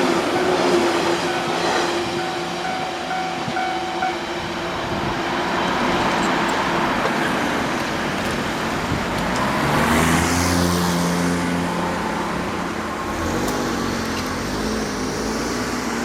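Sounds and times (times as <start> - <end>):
vehicle engine passing close: 9.2 - 16.0.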